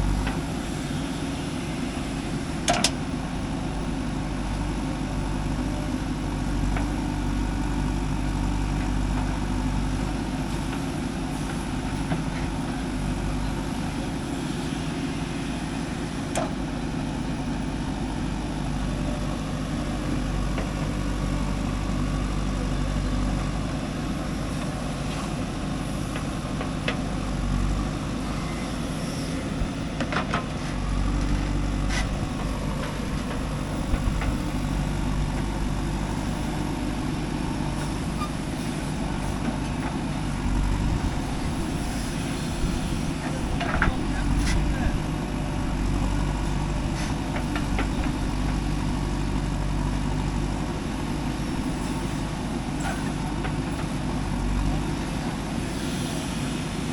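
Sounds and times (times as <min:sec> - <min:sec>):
diesel machinery engine running: 0:00.0 - 0:56.9.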